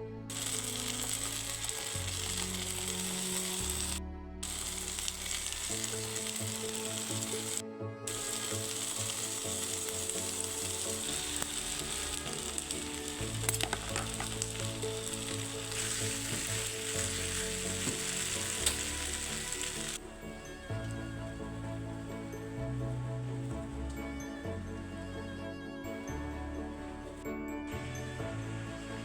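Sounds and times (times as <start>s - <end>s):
food sizzling in hot oil: 0.3s - 20.0s.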